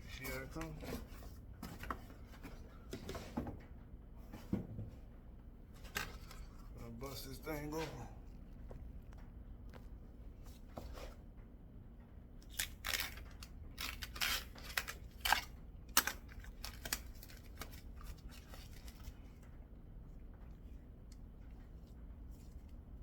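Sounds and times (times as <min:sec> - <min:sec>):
packaging tearing: 0:12.4 - 0:19.1.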